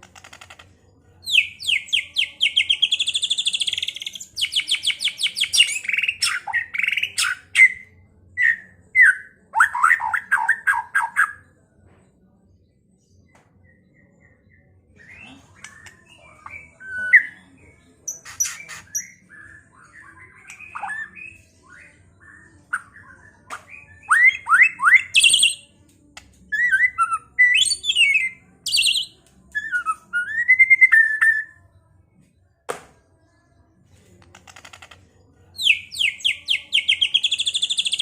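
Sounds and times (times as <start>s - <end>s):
bird singing whistles and trills: 18.1s - 25.6s, 26.5s - 31.6s, 35.6s - 38.0s.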